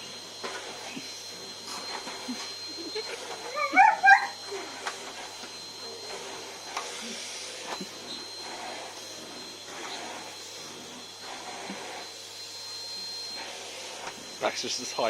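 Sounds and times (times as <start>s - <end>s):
vacuum cleaner running: 0.0s - 15.0s
dog barking: 3.6s - 4.4s.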